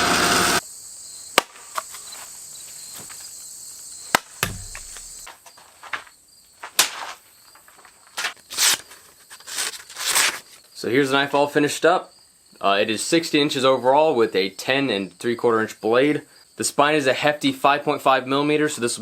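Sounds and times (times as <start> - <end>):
sharp clicks and knocks: 4.1 - 6.0.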